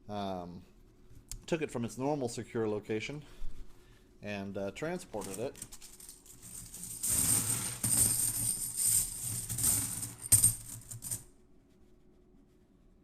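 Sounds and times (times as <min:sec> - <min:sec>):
coins jingling and clinking: 0:05.2 - 0:11.3.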